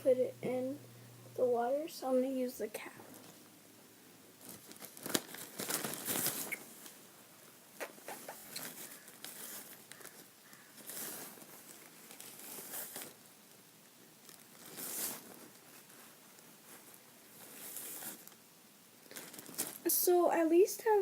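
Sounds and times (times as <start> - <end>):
faint rustling: 4.3 - 18.4.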